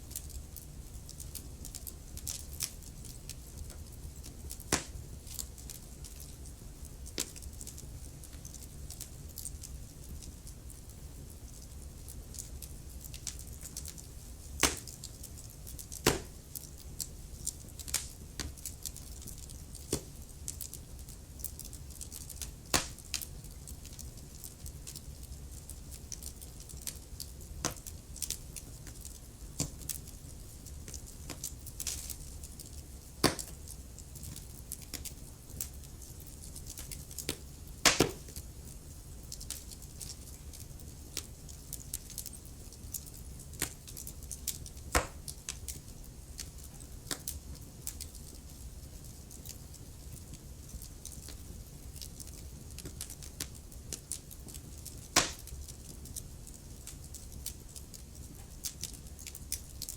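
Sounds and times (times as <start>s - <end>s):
wood fire crackling: 0.0s - 59.9s
loud sharp fire pops: 4.7s - 5.0s, 14.6s - 15.0s, 15.9s - 16.4s, 22.7s - 23.0s, 33.2s - 33.6s, 37.2s - 38.4s, 44.9s - 45.3s, 55.1s - 55.6s.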